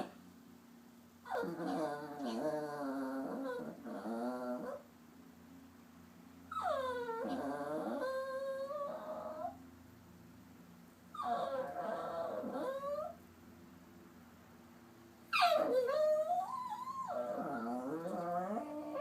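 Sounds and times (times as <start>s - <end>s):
dog whining: 1.2s - 4.8s, 6.5s - 9.6s, 11.1s - 13.2s, 15.3s - 19.0s.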